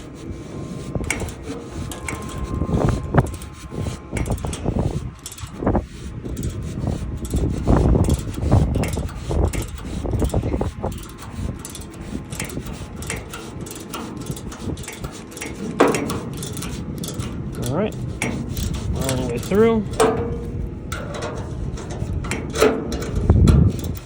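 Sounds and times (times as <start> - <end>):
metal-on-metal scrapes: 0.0 - 24.0
low rumble: 0.3 - 9.3, 17.3 - 22.1
ratcheting wrench clicks: 7.2 - 20.2.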